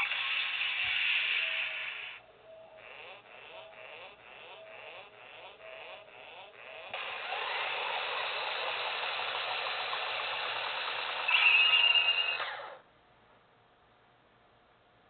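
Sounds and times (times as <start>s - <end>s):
whirring hiss: 0.0s - 2.2s, 3.5s - 12.8s
short electronic pulses: 0.0s - 12.8s
toy belt electronic sound effect: 0.0s - 12.8s
bright high tone: 11.3s - 12.4s.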